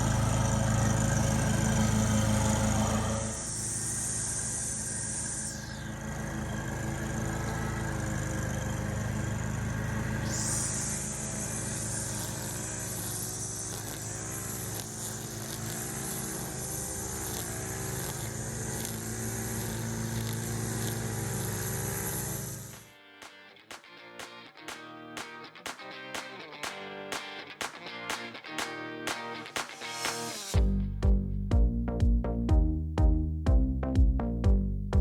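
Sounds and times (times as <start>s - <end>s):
lawn mower engine running: 0.0s - 22.9s.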